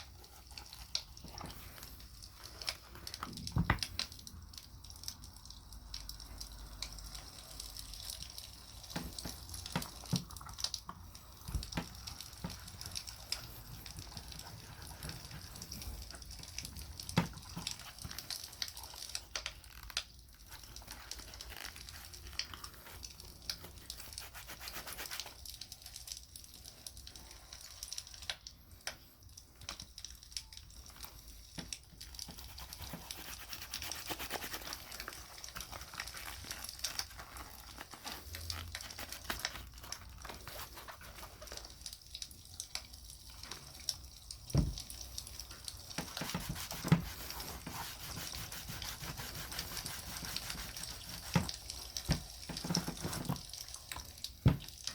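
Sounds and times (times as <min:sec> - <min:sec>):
wax rubbing on leather: 0:20.4 - 0:25.4, 0:32.1 - 0:41.6, 0:45.9 - 0:53.5.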